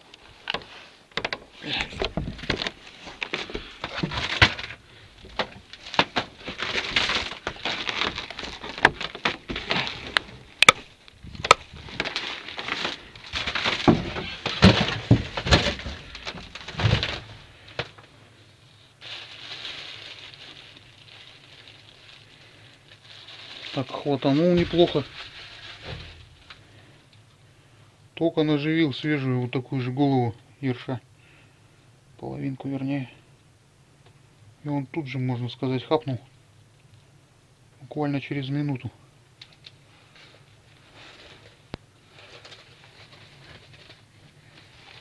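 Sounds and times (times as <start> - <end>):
faint steady hiss: 0.0 - 45.0
handling knocks and scrapes: 0.5 - 18.0, 24.2 - 26.7.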